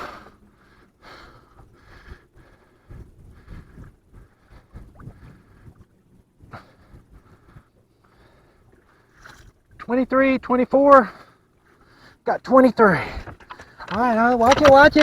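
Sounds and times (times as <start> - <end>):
knocks and rustles in boat: 13.0 - 15.0.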